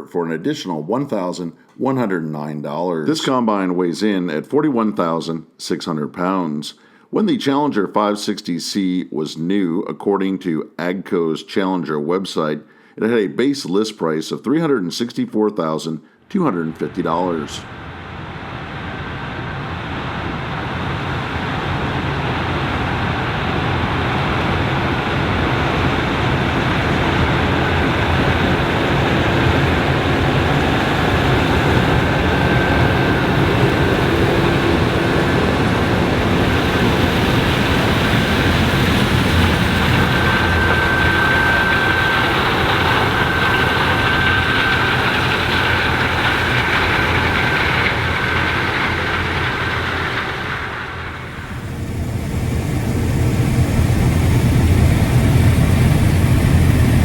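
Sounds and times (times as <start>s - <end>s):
combine harvester running: 16.8s - 57.0s.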